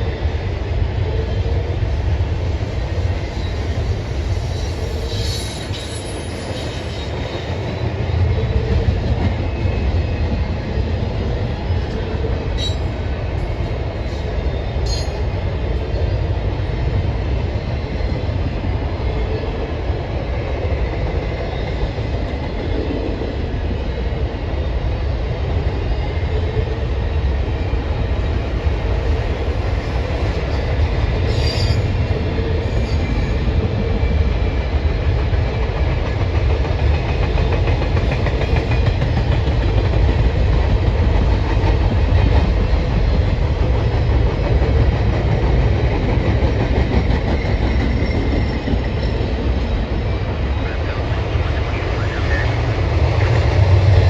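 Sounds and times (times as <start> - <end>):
train cars rumbling on rails: 0.0 - 54.0
wheels clicking and squeaking on rail: 3.1 - 10.7, 11.4 - 16.4, 30.3 - 34.1, 36.2 - 51.0.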